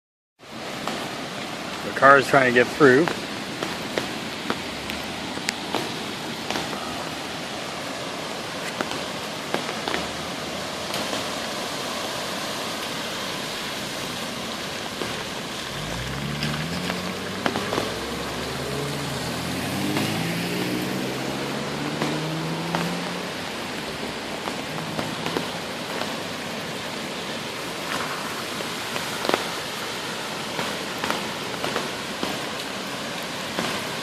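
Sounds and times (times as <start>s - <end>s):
heavy rain and rushing water: 0.4s - 34.0s
car engine revving: 15.5s - 25.8s.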